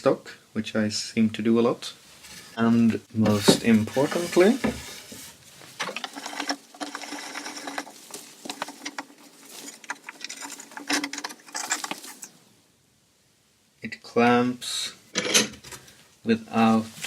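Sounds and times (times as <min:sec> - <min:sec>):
vise screw clicking and rattling: 0:04.0 - 0:12.3.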